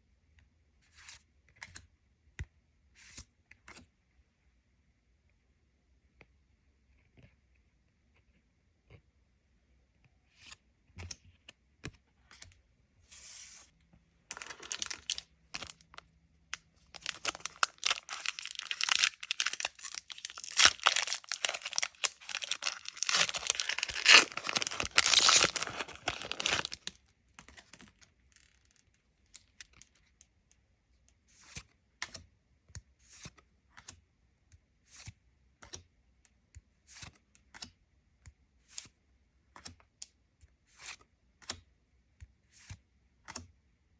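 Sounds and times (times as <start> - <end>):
foil wrapper tearing and crinkling: 14.3 - 15.8, 17.0 - 26.9
cards clicking and tapping: 14.3 - 16.0.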